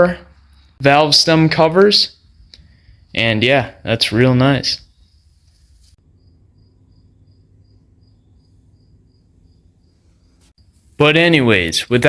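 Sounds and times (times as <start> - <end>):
cricket chirping: 0.3 - 0.8, 2.1 - 10.8.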